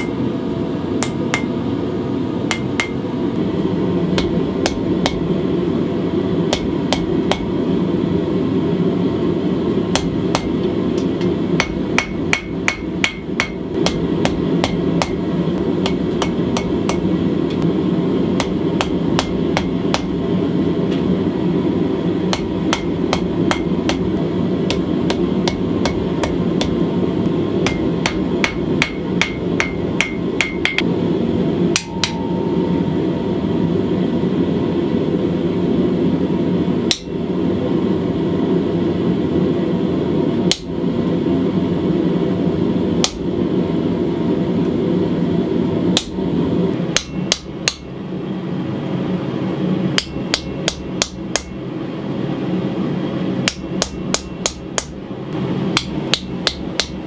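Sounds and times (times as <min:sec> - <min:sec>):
hammer ringing on anvil: 0:00.0 - 0:00.2, 0:01.0 - 0:01.6, 0:02.5 - 0:03.0, 0:06.5 - 0:07.5, 0:10.0 - 0:17.6, 0:18.4 - 0:20.2, 0:22.3 - 0:24.1, 0:24.7 - 0:26.8, 0:27.7 - 0:30.8, 0:31.7 - 0:32.9, 0:47.0 - 0:47.9, 0:50.0 - 0:51.6, 0:53.5 - 0:55.0
steady rushing noise: 0:02.5 - 0:36.6.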